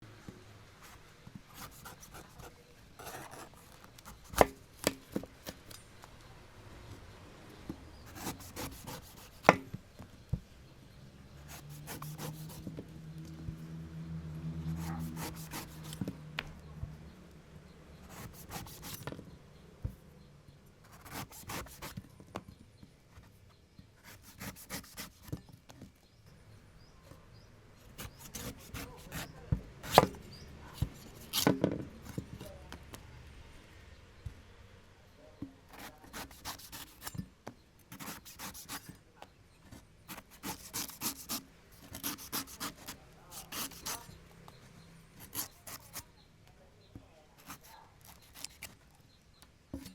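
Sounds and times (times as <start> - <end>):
coconut scraping strokes: 0.8 - 5.6, 8.0 - 9.6, 11.4 - 12.8, 14.6 - 16.3, 18.0 - 19.2, 20.9 - 22.0, 24.0 - 25.4, 27.8 - 32.6, 35.7 - 37.2, 37.9 - 39.0, 39.7 - 44.2, 45.2 - 46.1, 47.3 - 48.8.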